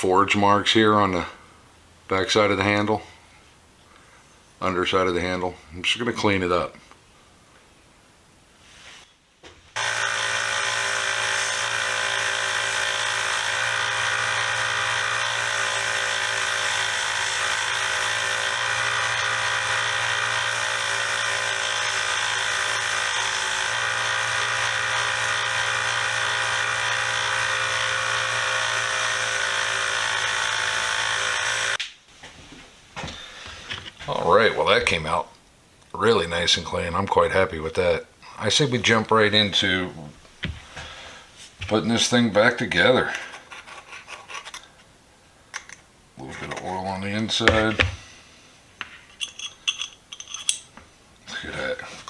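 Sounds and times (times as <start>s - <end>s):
belt sander sanding steel: 9.8s - 31.8s, 46.5s - 48.0s.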